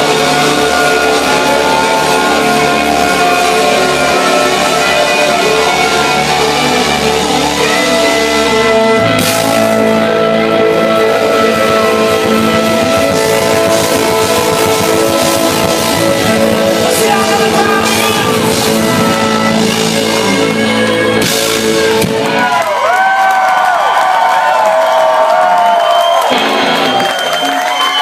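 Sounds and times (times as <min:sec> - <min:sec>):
rock music with guitar: 0:00.0 - 0:22.6
bass guitar: 0:00.0 - 0:23.2
person singing: 0:10.7 - 0:22.0.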